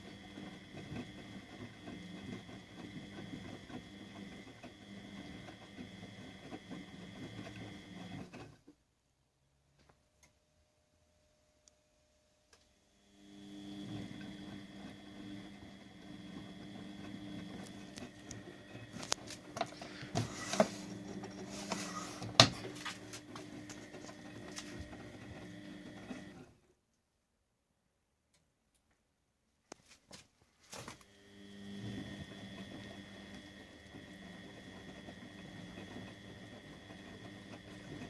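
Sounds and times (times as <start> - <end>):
washing machine motor humming: 0.0 - 8.7, 13.0 - 26.6, 30.6 - 38.0.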